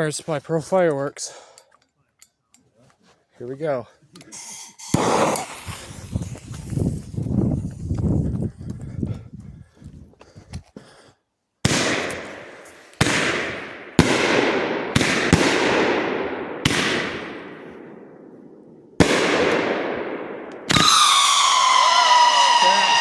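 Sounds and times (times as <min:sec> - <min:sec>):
firework reports: 0:04.3 - 0:07.4, 0:20.7 - 0:23.0
firework hiss: 0:04.3 - 0:07.9.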